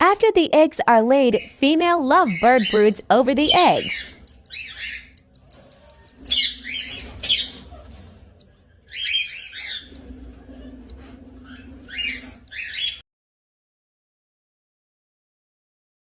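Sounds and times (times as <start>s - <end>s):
lovebirds chirping and squawking: 1.3s - 13.0s.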